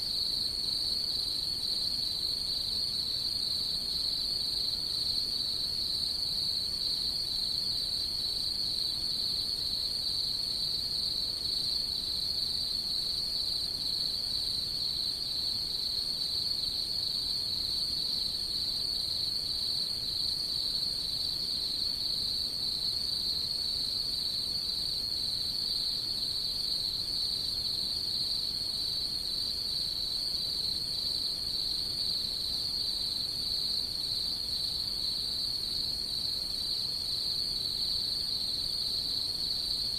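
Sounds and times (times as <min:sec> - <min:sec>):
night insects chorus: 0:00.0 - 0:39.9.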